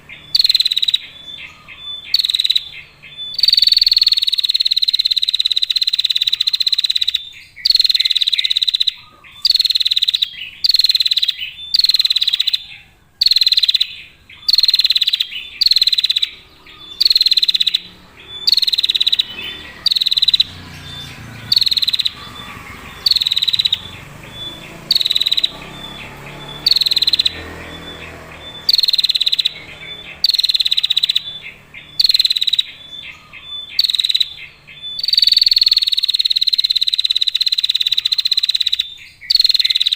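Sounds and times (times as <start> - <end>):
bird rattling trills: 0.0 - 39.9.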